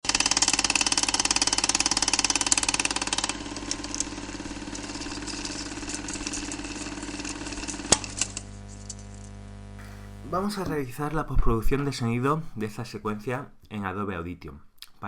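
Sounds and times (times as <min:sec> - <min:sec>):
engine running with rapid pulsing: 0:00.1 - 0:10.2.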